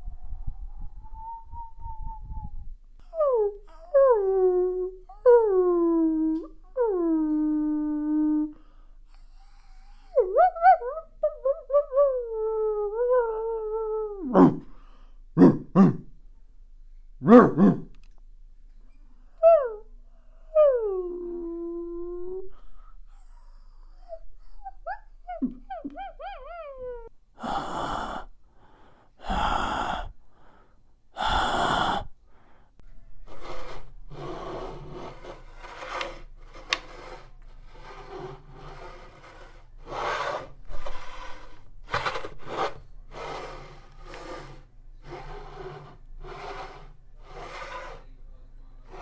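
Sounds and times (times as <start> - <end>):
person breathing hard: 14.7 - 15.3, 27.4 - 32.8.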